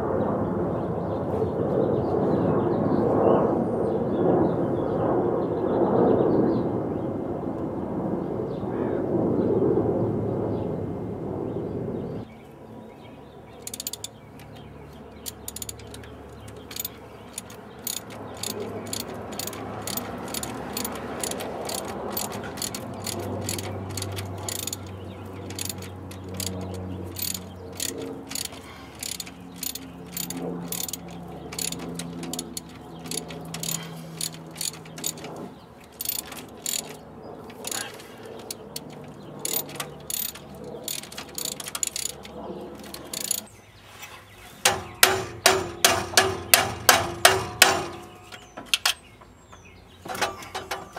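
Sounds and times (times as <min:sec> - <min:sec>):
ratchet wrench clicking: 0:13.6 - 0:14.6, 0:15.2 - 0:43.5.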